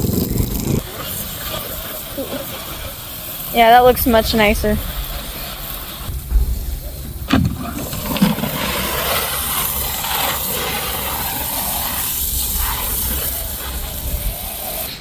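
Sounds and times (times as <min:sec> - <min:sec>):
wind buffeting microphone: 0:03.5 - 0:10.0.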